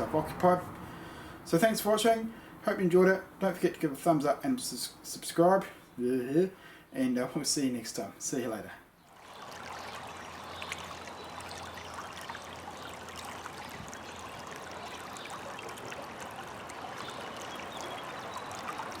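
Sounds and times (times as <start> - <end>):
small water splashes: 9.0 - 19.0
water flowing and trickling: 9.0 - 19.0.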